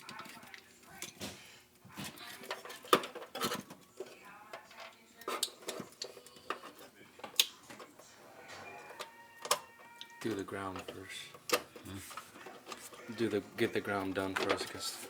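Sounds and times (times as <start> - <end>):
metal parts clicking and clinking: 8.8 - 15.0.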